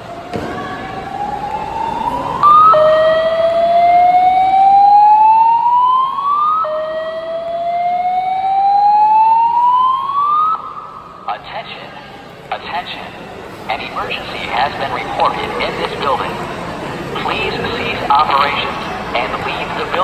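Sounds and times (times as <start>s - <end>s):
fire alarm whooping tone: 1.1s - 11.1s.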